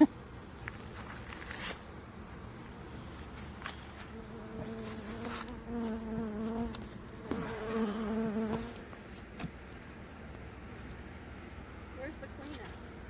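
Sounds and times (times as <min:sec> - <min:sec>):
bees buzzing: 0:03.8 - 0:09.0.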